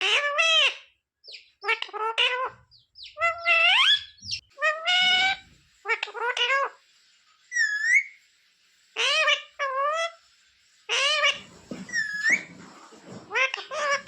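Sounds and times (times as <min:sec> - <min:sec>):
parrot calls: 0:00.0 - 0:06.8, 0:07.5 - 0:08.2, 0:09.0 - 0:10.2, 0:10.9 - 0:12.6, 0:13.2 - 0:14.0
parrot whistle: 0:07.5 - 0:08.2, 0:10.9 - 0:12.5.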